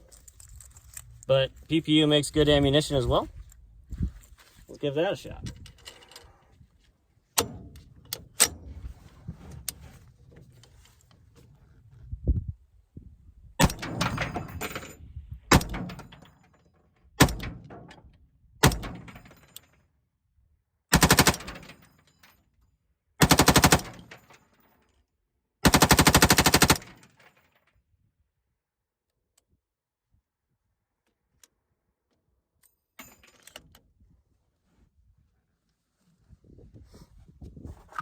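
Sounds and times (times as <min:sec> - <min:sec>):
automatic gunfire bursts: 0:20.9 - 0:21.6, 0:23.2 - 0:24.1, 0:25.6 - 0:27.0.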